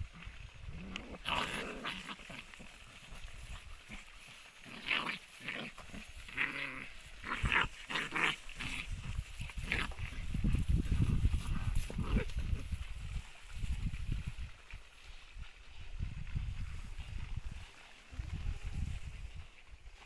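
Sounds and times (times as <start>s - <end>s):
puppies growling: 0.0s - 12.9s.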